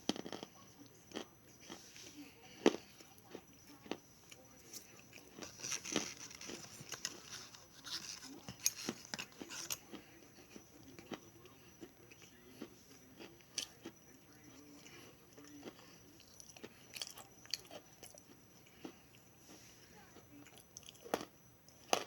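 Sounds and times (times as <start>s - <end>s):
crunchy chewing: 0.0s - 22.0s.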